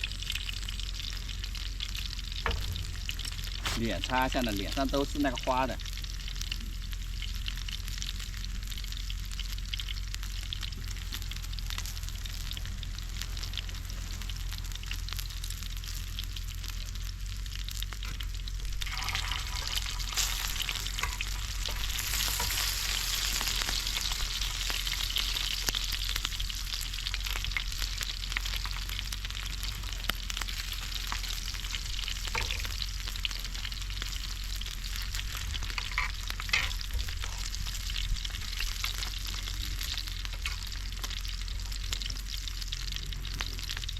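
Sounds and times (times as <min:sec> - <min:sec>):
food sizzling in a hot pan: 0:00.0 - 0:43.9.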